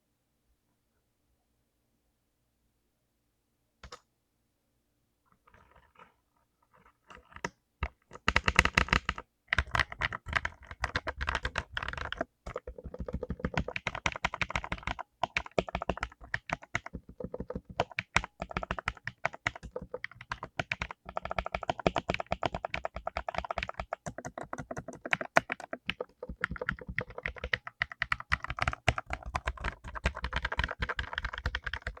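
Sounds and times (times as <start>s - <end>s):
mechanical keyboard typing: 7.1s - 32.0s.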